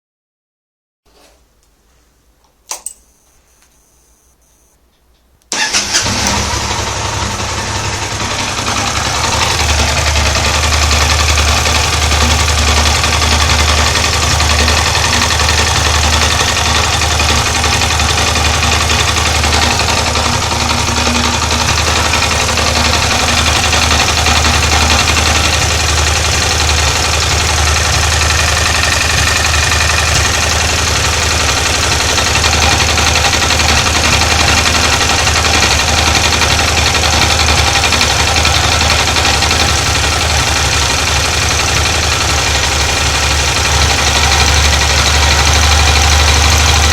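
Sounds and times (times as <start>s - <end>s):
short click: 2.7s - 3.8s
motorcycle engine starting and idling: 5.5s - 46.9s.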